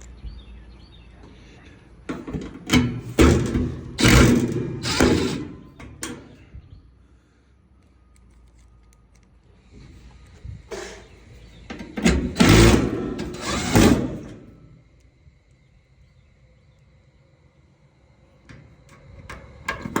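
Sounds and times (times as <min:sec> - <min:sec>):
sheet metal panel scraping: 0:02.1 - 0:06.3, 0:11.7 - 0:14.6.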